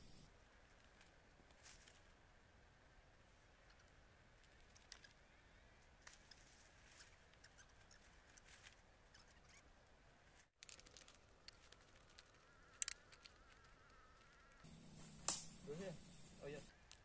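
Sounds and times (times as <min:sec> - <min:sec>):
ticks and crackles: 0:10.6 - 0:14.6.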